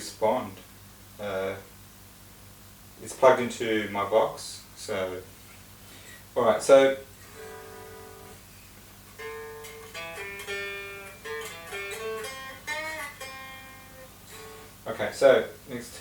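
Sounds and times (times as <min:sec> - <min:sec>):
clean electric guitar notes: 0:07.3 - 0:08.4, 0:09.1 - 0:15.0.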